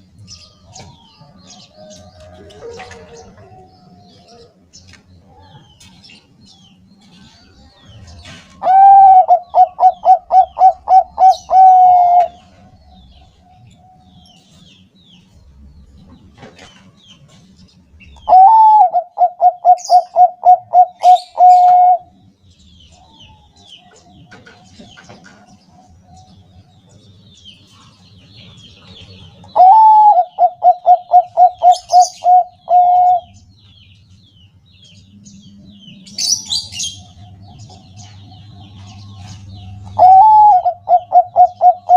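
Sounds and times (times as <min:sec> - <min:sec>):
dove cooing: 0:00.5 - 0:04.6, 0:08.2 - 0:13.5, 0:18.2 - 0:22.2, 0:28.9 - 0:33.4, 0:35.8 - 0:41.9.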